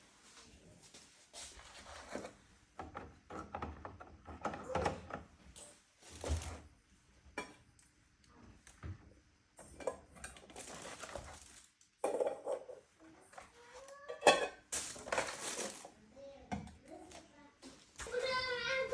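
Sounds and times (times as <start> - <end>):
kitchen items clattering: 1.6 - 5.4, 6.0 - 6.7, 9.6 - 16.8.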